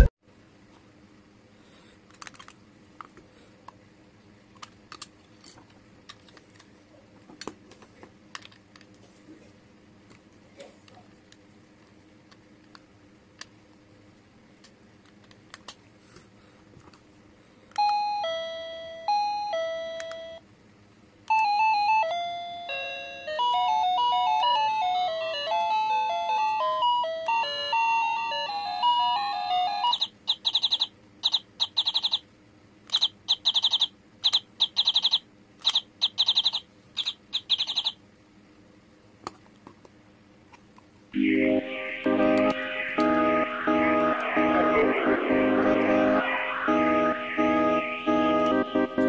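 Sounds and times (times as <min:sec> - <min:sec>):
electronic doorbell melody: 0:17.8 - 0:20.4, 0:21.3 - 0:30.9.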